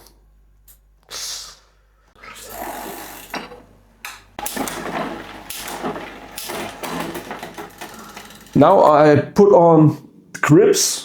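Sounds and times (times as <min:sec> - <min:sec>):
bicycle chain clattering: 0:02.4 - 0:03.7, 0:04.4 - 0:09.2.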